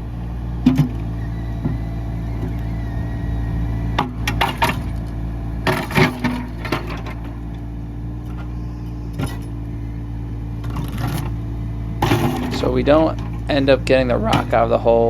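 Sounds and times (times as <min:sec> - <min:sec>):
excavator diesel engine running: 0:00.0 - 0:15.0
bucket clanking and scraping rock: 0:05.7 - 0:07.4, 0:12.0 - 0:13.5.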